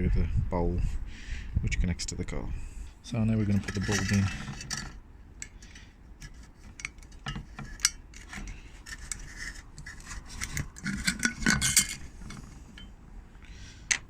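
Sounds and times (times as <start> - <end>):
metal parts scraping: 3.3 - 12.9.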